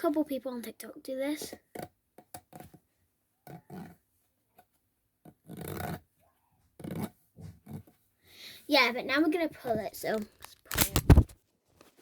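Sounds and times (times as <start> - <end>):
plastic fidget toy rasping: 5.2 - 6.1.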